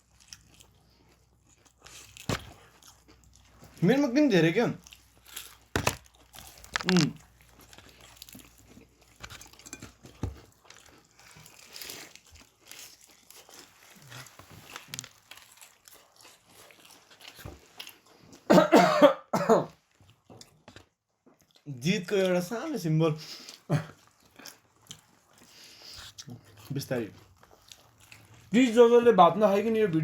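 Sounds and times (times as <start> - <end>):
chewing and crunching: 0.0 - 18.5, 19.7 - 30.0
man coughing: 18.5 - 19.8, 23.7 - 24.0.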